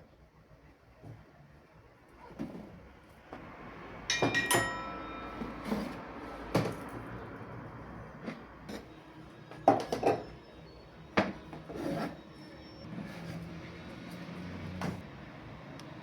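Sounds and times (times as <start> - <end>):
container scraping rub: 11.6 - 12.2.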